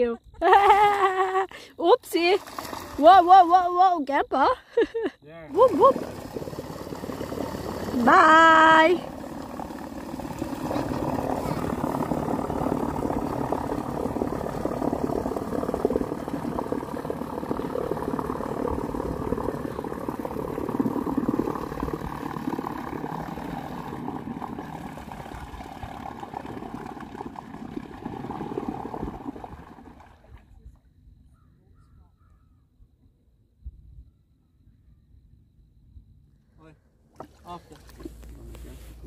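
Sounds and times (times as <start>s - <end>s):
motor running: 5.5s - 28.5s.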